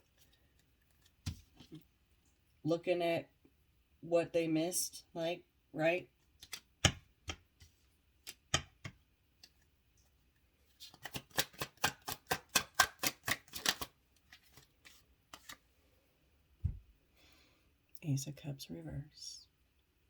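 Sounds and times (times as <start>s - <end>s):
cards shuffling and clicking: 0.1s - 1.8s, 6.3s - 9.7s, 10.8s - 15.6s
rapid card snaps: 6.4s - 7.4s, 10.8s - 15.6s.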